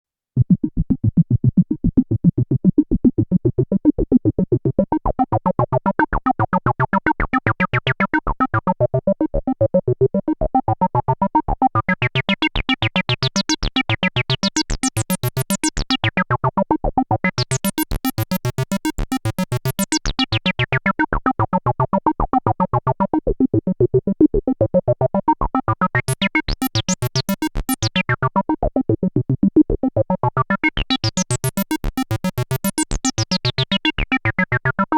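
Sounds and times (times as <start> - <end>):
synthesizer acid bassline: 17.5 - 20.0, 25.8 - 28.4, 30.3 - 34.9.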